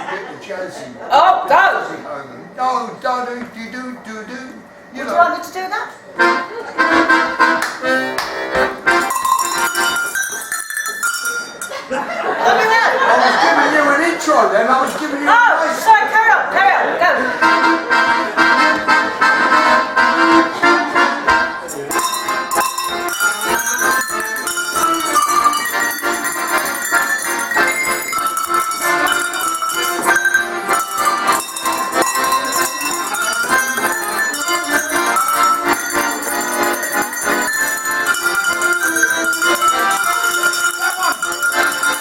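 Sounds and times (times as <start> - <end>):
accordion accompaniment: 3.4 - 42.0
tuned cowbells melody: 8.9 - 11.9, 21.7 - 42.0.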